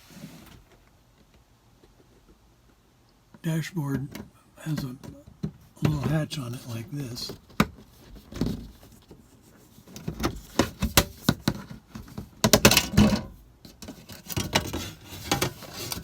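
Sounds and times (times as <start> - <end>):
plastic hatch clicks and rattles: 10.0 - 16.0.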